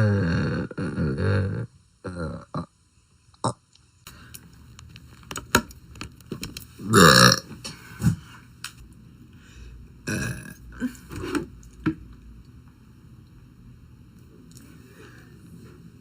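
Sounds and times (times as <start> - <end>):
girl burping: 6.9 - 7.5.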